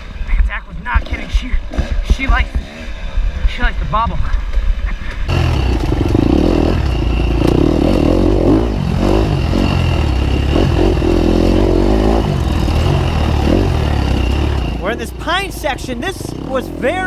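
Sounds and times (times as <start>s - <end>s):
dirt bike engine revving: 0.8s - 17.0s
clatter: 4.4s - 14.8s.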